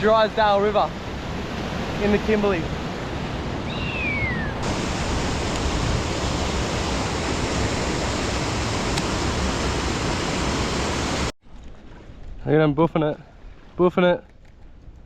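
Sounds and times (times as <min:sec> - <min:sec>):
short falling whistle: 0:03.7 - 0:04.6
water rushing over rocks: 0:04.6 - 0:11.3.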